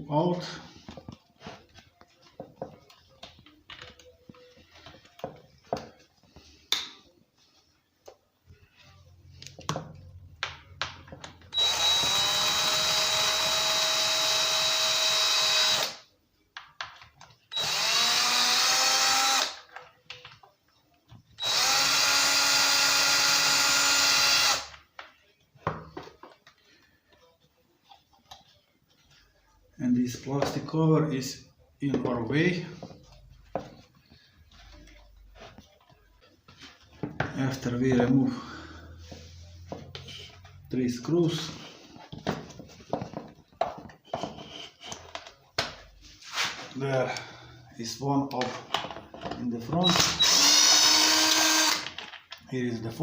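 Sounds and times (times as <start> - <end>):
power drill whining: 11.5 - 16.0, 17.5 - 19.6, 21.4 - 24.7, 49.8 - 52.0.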